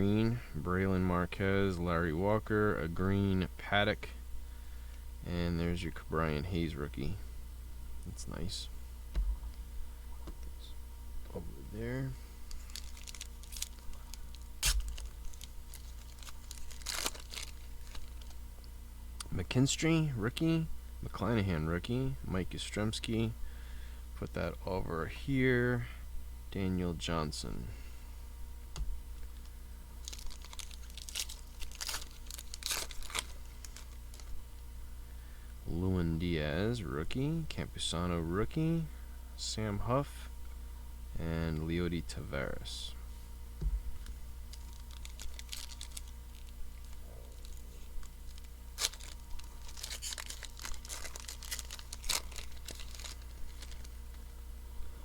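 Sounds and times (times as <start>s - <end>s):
sharp wrapper rips: 12.5s - 18.4s, 30.0s - 34.3s, 44.5s - 54.0s
wrapper tearing and crinkling: 12.5s - 18.4s, 30.0s - 34.3s, 44.5s - 54.2s.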